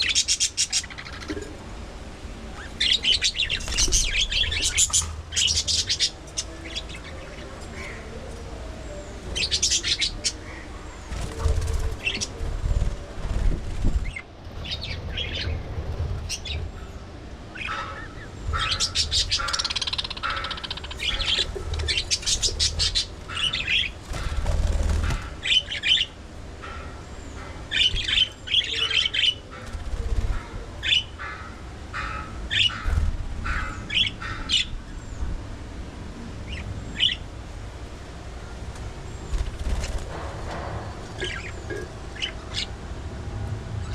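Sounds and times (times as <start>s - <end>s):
budgerigars chirping and squawking: 0.0s - 1.4s, 2.6s - 8.1s, 9.3s - 12.9s, 17.5s - 34.8s, 36.5s - 37.2s, 41.1s - 42.7s.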